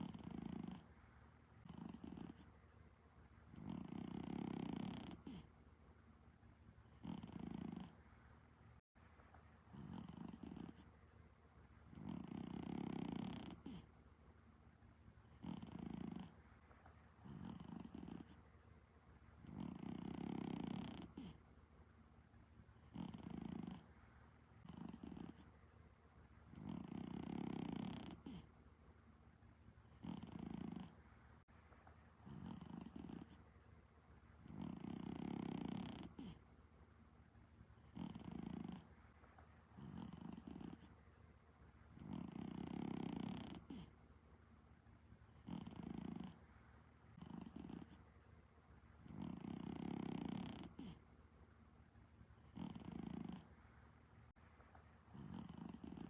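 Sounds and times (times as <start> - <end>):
cat snoring softly: 0.0 - 2.6, 3.5 - 5.6, 6.9 - 8.2, 9.2 - 11.0, 11.9 - 14.0, 15.2 - 18.5, 19.4 - 21.5, 22.8 - 25.6, 26.5 - 28.6, 29.8 - 31.2, 32.2 - 33.5, 34.4 - 36.5, 37.8 - 41.0, 41.9 - 44.0, 45.3 - 46.5, 47.1 - 48.1, 49.0 - 51.1, 52.4 - 53.6, 55.1 - 56.0.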